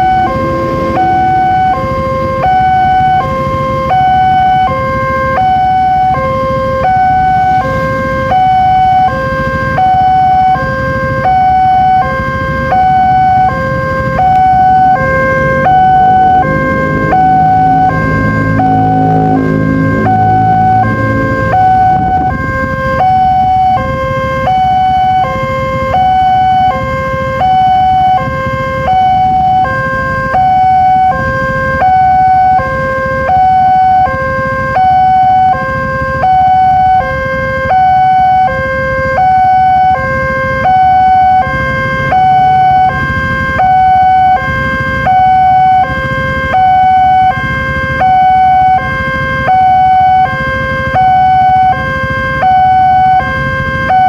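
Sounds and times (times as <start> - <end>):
low rumble: 0.0 - 4.5, 12.8 - 24.4
level-crossing siren two-tone wail: 0.0 - 54.0.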